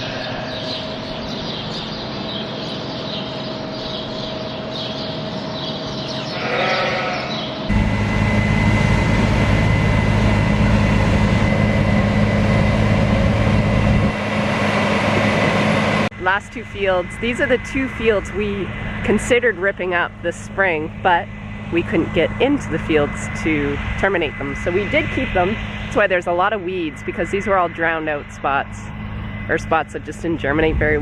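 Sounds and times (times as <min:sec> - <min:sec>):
sheep and lambs bleating: 0:00.0 - 0:00.8, 0:06.2 - 0:07.5
farm machinery engine drone: 0:00.0 - 0:31.0.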